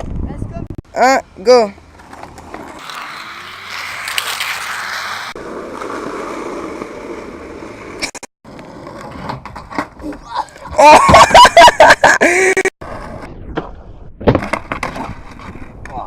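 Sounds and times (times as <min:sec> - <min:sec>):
skateboard wheels rolling on pavement: 0:01.6 - 0:11.3, 0:12.8 - 0:16.0.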